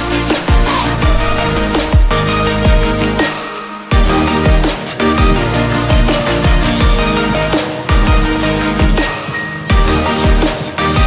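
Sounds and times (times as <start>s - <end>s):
electronic dance music: 0.0s - 11.0s
heavy bass drum: 0.2s - 3.3s, 3.9s - 9.1s.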